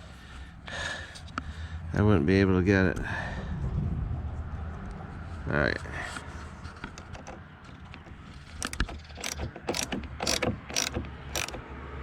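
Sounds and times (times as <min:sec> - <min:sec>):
socket wrench ratchet clicking: 0:07.0 - 0:11.7.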